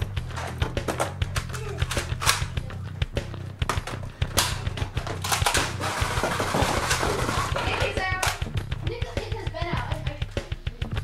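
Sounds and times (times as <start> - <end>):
bass line: 0.0 - 11.0
drum hits: 0.0 - 11.0.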